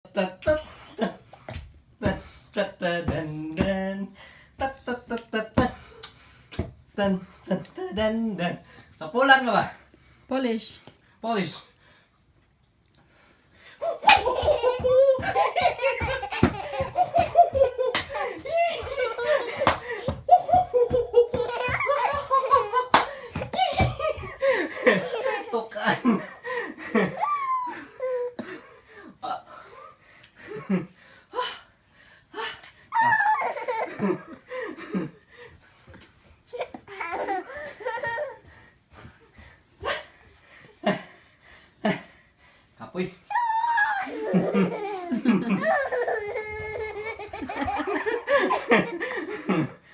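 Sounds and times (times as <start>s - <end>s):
baby laughing: 13.8s - 26.0s, 33.0s - 34.3s, 36.5s - 38.5s, 43.3s - 49.2s.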